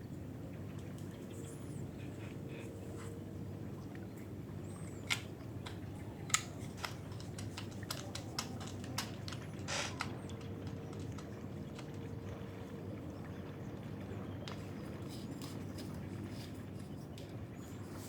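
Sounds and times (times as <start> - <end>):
light clicks and taps: 4.8 - 12.4, 14.4 - 18.0.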